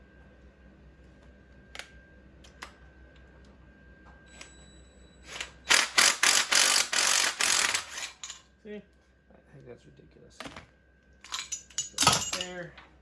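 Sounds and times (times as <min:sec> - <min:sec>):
ratchet wrench clicking: 0:05.7 - 0:08.4.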